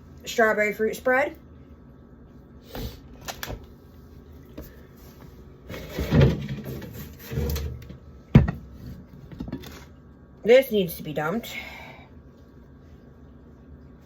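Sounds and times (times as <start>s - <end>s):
jars and containers handled: 5.7s - 10.0s.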